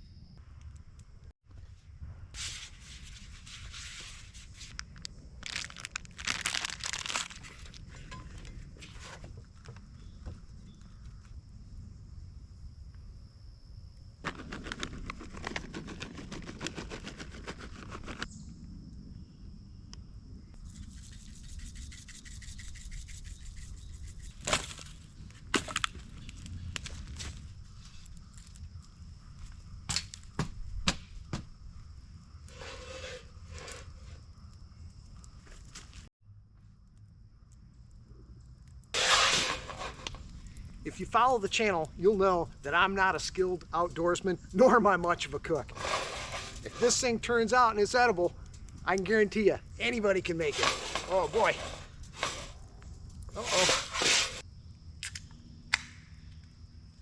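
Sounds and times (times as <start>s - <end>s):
campfire crackling: 2.4s - 57.0s
crinkling and crumpling: 3.1s - 9.8s.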